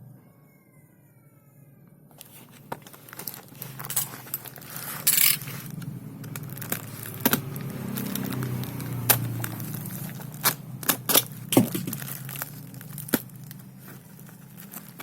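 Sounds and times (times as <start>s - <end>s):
plastic and cardboard rustling: 2.1s - 15.0s
clicks and knocks: 11.1s - 12.2s.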